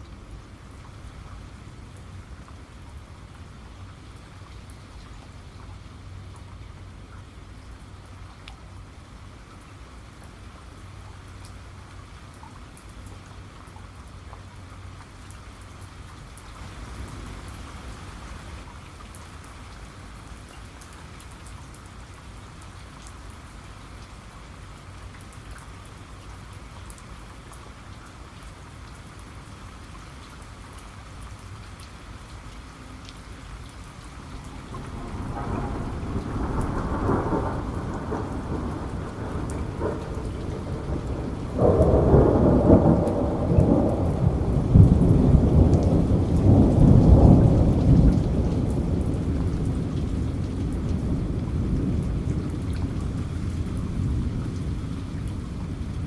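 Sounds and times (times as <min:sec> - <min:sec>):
rain falling: 0:00.0 - 0:56.0
rolling thunder: 0:34.4 - 0:56.0.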